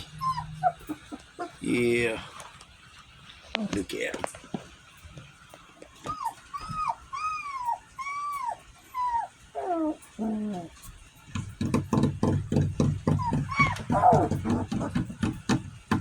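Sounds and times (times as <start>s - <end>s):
puppies whimpering: 0.0s - 2.5s, 5.5s - 11.2s, 13.0s - 15.3s.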